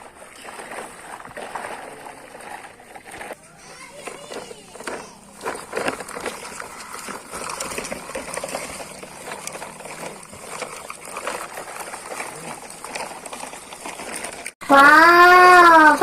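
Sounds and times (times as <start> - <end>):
water sloshing and trickling: 0.0 - 14.6
small irregular clicks and knocks: 2.4 - 14.6.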